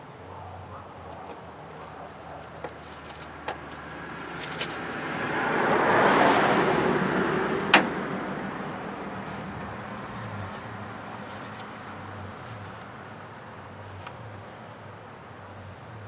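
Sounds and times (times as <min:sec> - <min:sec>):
vehicle passing by: 0:00.5 - 0:13.1.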